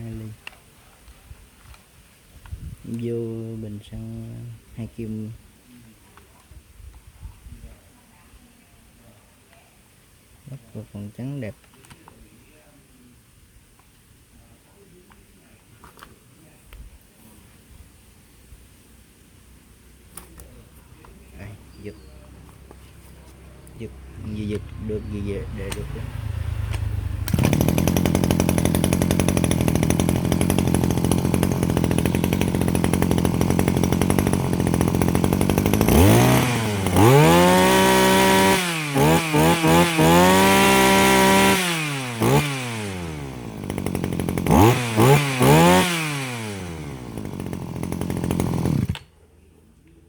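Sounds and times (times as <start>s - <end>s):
brush cutter engine revving: 20.1s - 49.2s.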